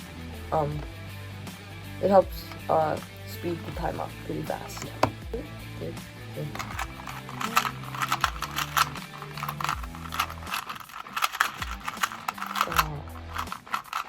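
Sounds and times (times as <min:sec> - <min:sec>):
puzzle cube plastic clicking: 0:04.7 - 0:05.3, 0:06.5 - 0:14.0.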